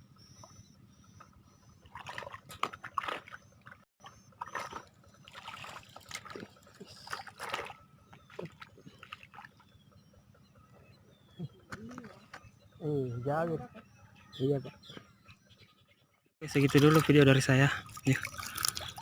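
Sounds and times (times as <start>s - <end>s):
water splashing: 1.8s - 3.8s, 4.4s - 9.5s, 16.5s - 19.0s.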